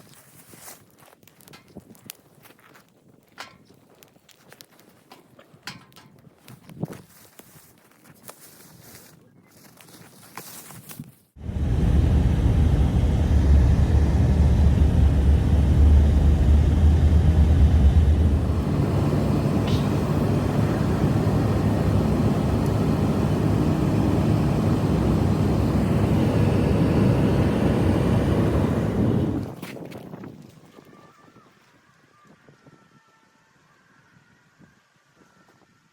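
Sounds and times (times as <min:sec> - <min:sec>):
blizzard wind rumbling: 0:11.4 - 0:29.6.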